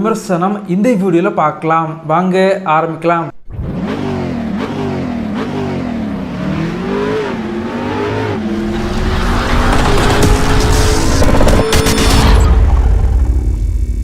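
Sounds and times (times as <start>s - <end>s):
racing car engine revving: 3.4s - 13.5s.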